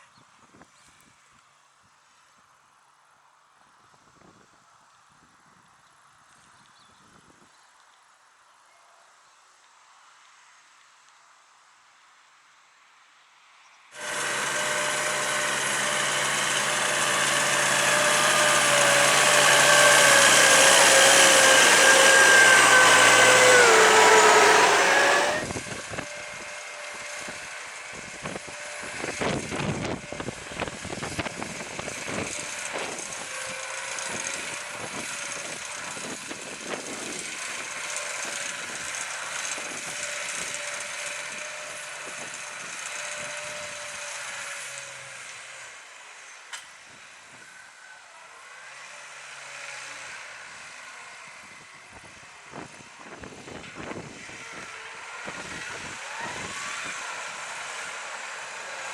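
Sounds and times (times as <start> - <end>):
engine crackling: 14.0 - 25.6
tractor diesel engine under load: 14.0 - 25.7, 54.2 - 58.9.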